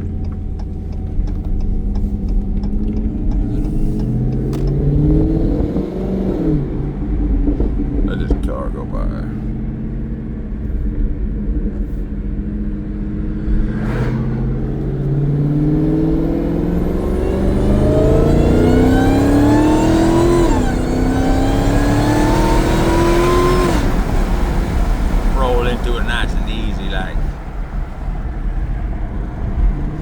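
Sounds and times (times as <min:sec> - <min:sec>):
car engine accelerating hard: 0:00.0 - 0:30.0
supercharger whine: 0:00.0 - 0:30.0.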